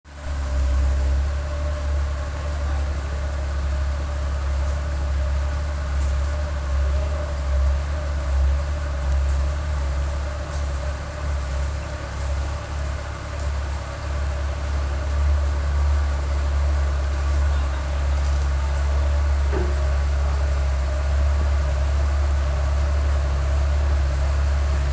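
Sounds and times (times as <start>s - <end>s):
excavator diesel engine droning: 0.1s - 24.9s.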